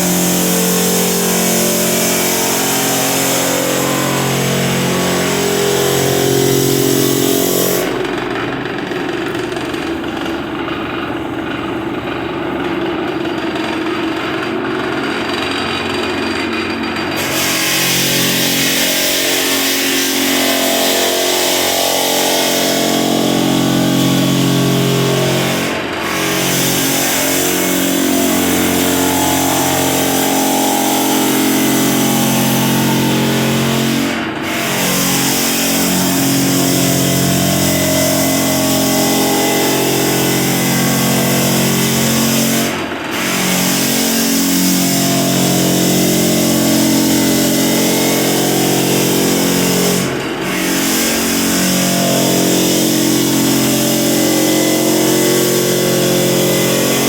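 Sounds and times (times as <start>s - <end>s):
floor sander motor hum: 0.0s - 57.0s
loud sanding hiss: 26.2s - 42.4s.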